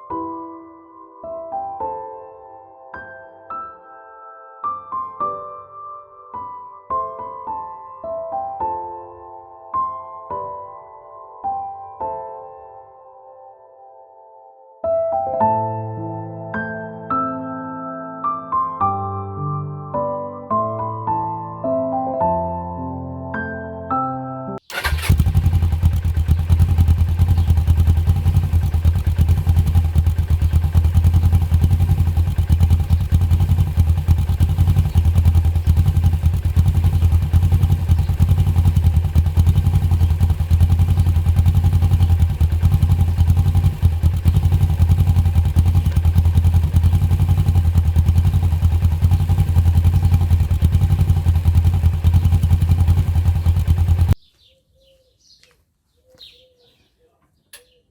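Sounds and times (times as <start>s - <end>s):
motorcycle engine idling: 24.7s - 54.2s.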